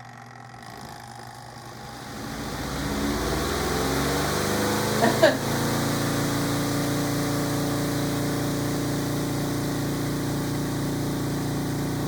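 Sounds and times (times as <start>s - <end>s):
spin dryer motor hum: 0.0s - 12.0s.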